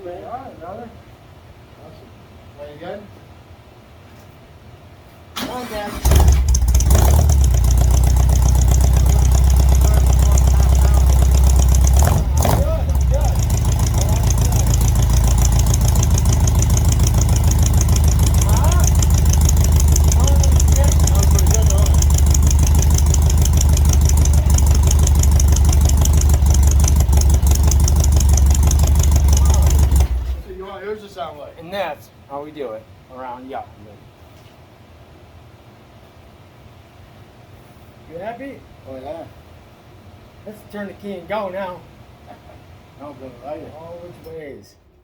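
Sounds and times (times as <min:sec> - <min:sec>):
trike engine idling: 0:05.4 - 0:30.6.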